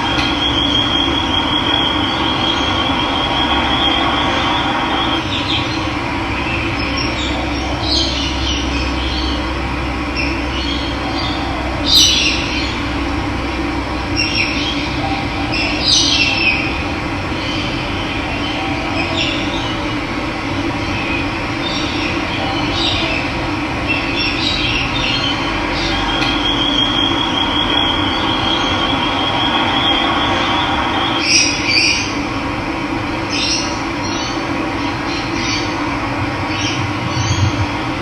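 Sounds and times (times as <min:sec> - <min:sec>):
bird trilling: 0:00.0 - 0:05.8.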